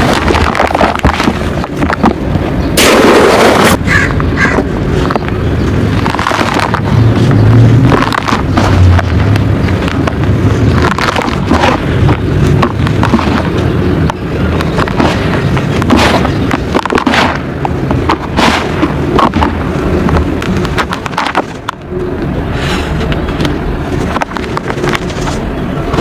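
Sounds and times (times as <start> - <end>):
mud and water being mixed: 0.0 - 3.8, 5.0 - 21.8.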